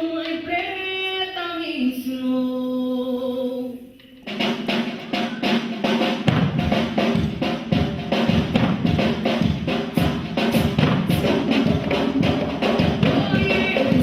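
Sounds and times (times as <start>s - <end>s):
hand drums playing rhythm: 4.3s - 14.0s
deep bass drums: 6.3s - 14.0s.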